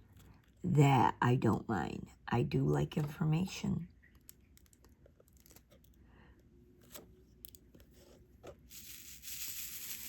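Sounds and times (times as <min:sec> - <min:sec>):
resin beads rattling in tray: 0:08.6 - 0:10.0.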